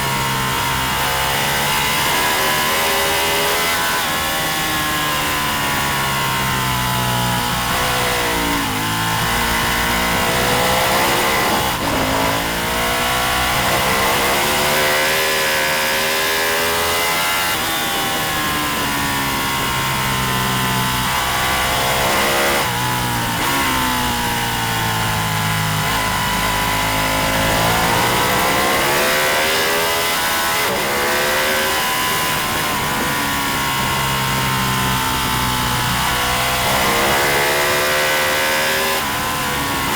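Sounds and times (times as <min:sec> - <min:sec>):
racing motorcycle engine revving: 0:00.0 - 0:39.9.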